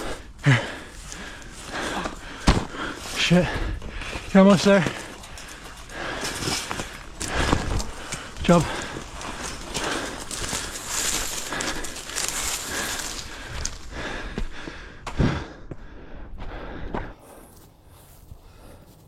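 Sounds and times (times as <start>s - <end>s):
rustling and scuffing: 1.0s - 13.8s.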